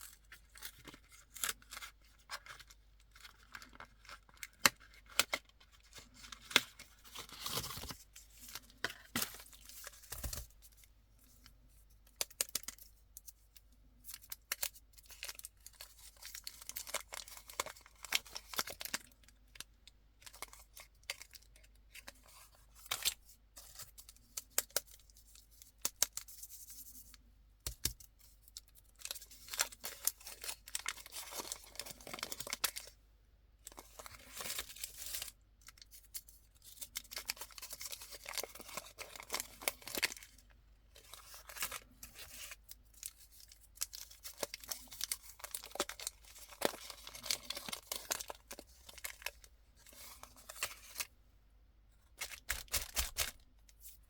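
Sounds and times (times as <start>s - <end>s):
plastic wrappers crinkling and tearing: 0.1s - 10.6s, 14.0s - 26.4s, 27.8s - 33.0s, 33.6s - 51.1s, 52.1s - 54.0s.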